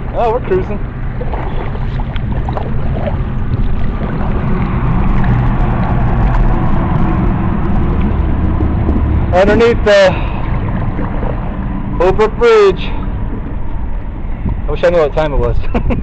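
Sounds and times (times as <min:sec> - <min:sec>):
water rushing: 0:00.0 - 0:15.4
heavy low rumble: 0:00.0 - 0:16.0.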